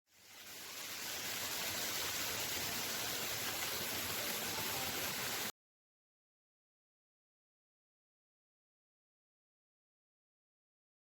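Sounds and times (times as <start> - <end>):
waterfall rushing: 0.6 - 5.5.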